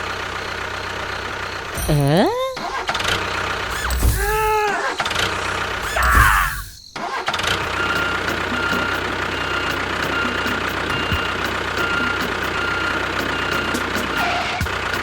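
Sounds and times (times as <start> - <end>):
motor whining: 3.0 - 6.8.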